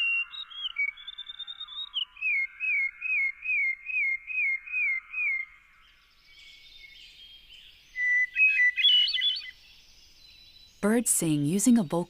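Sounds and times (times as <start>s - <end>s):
bird chirping loudly: 0.0s - 5.5s, 7.9s - 9.6s
songbird whistled notes: 0.0s - 5.5s, 6.3s - 10.8s.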